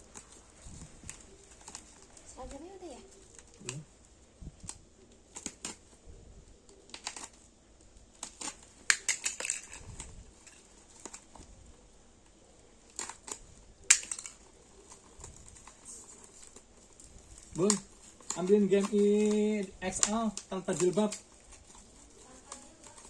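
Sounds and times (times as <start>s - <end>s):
packaging rustling: 0.0s - 11.5s, 12.8s - 23.0s
clicks and taps of small objects: 6.8s - 11.3s, 12.9s - 16.6s, 17.4s - 23.0s.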